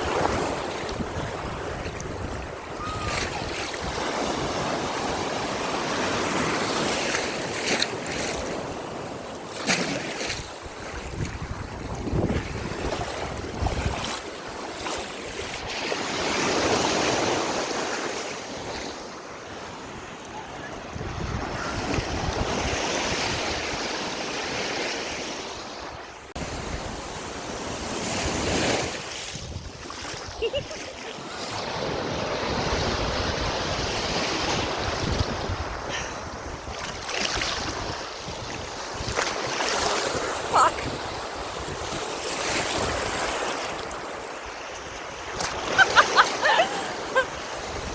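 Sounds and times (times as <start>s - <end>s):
wind buffeting microphone: 0.0s - 4.7s, 10.3s - 14.2s, 20.8s - 23.9s, 26.4s - 30.9s, 31.9s - 39.5s
ocean waves washing in: 16.0s - 47.9s.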